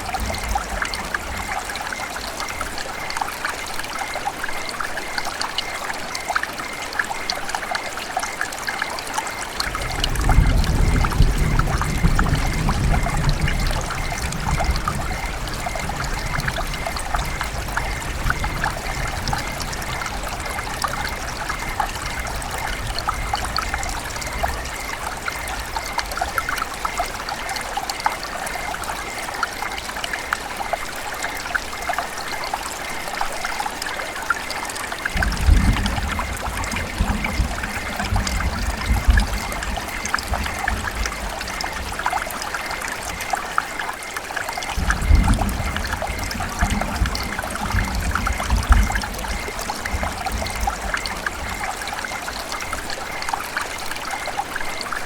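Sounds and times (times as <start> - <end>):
river water running: 0.0 - 55.0.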